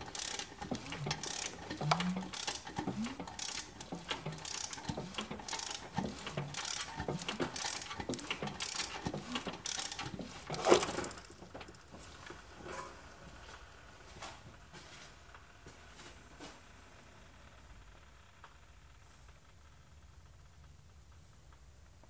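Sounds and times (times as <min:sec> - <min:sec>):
mechanical ratcheting clicks: 0:00.0 - 0:10.2.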